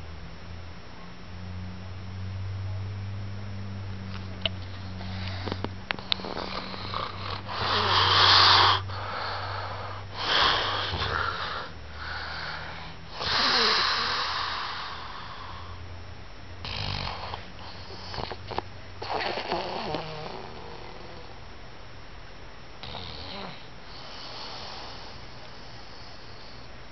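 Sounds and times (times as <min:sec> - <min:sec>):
man snoring: 0:04.7 - 0:15.7, 0:16.6 - 0:21.3, 0:22.8 - 0:26.7.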